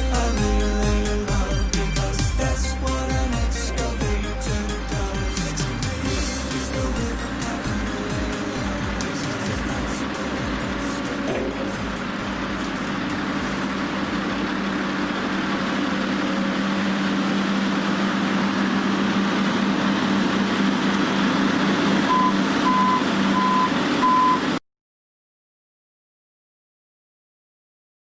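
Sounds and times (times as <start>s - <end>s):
heavy machine engine running: 0.0s - 24.6s
reversing beeps: 22.1s - 24.5s.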